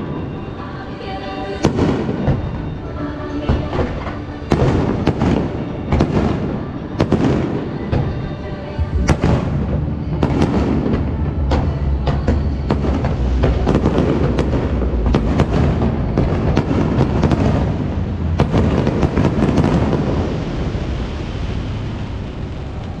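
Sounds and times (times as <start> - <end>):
firework bursts and crackles: 3.8 - 23.0
low rumble: 8.8 - 23.0.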